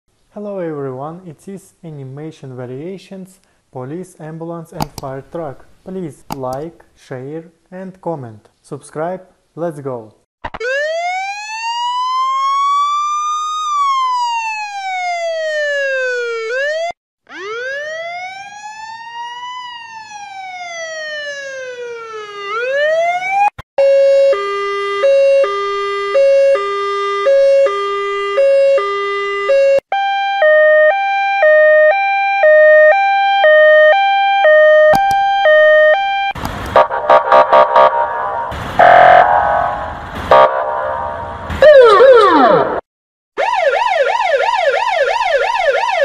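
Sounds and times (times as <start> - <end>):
hi-lo siren: 10.5 - 42.8, 43.4 - 46.0
wailing siren: 10.6 - 42.8, 43.4 - 46.0.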